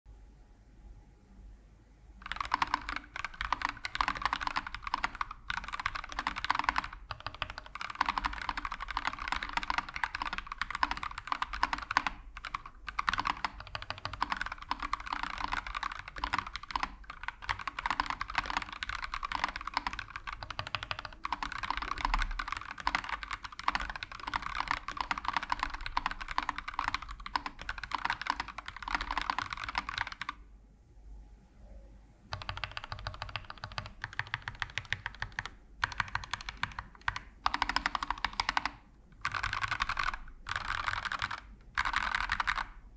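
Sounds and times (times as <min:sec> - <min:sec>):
mechanical keyboard typing: 0:02.2 - 0:30.4, 0:32.3 - 0:42.9.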